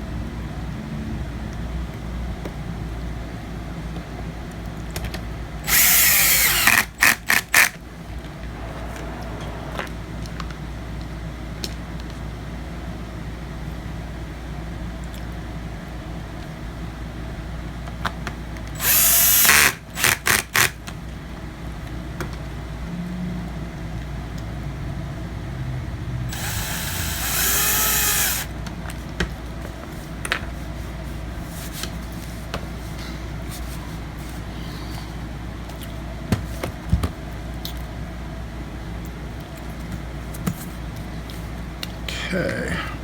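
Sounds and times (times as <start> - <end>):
electric screwdriver whirring: 5.6 - 7.8, 18.8 - 20.7, 26.3 - 28.5.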